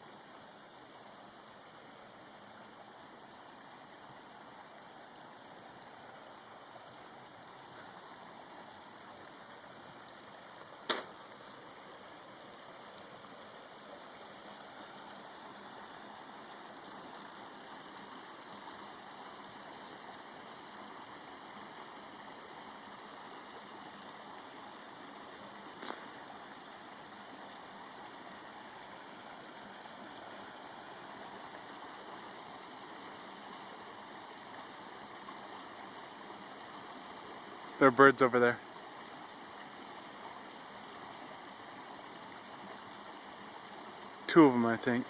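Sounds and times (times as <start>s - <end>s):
creek water flowing: 0.0s - 45.0s
sharp click: 10.9s - 11.2s.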